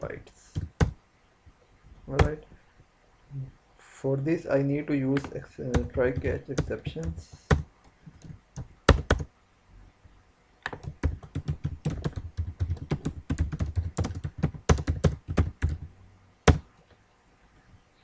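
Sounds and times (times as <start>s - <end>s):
computer keyboard typing: 0.6s - 1.0s, 5.1s - 9.3s, 10.6s - 15.9s.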